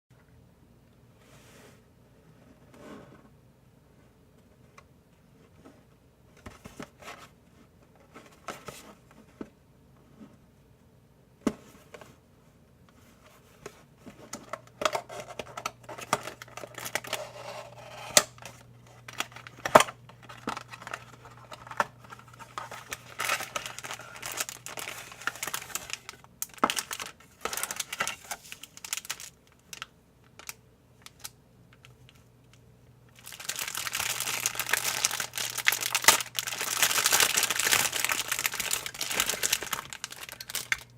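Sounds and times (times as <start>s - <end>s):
packaging crinkling and tearing: 14.3s - 32.2s, 33.2s - 40.9s.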